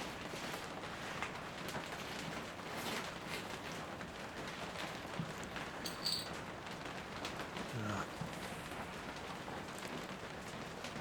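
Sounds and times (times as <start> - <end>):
steady rain falling: 0.0 - 11.0.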